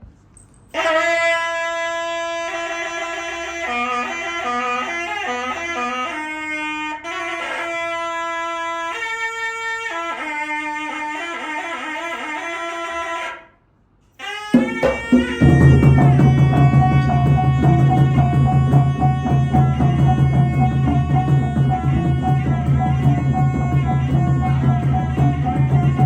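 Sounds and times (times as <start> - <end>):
double-reed wind instrument melody: 0.7 - 13.5, 14.2 - 26.0
ensemble with drums: 14.5 - 26.0.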